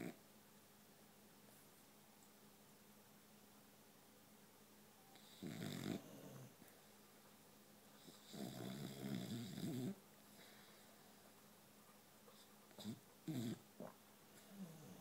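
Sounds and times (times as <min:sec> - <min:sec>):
dog snoring: 0:00.0 - 0:00.2, 0:05.1 - 0:06.6, 0:08.0 - 0:10.0, 0:12.7 - 0:15.0.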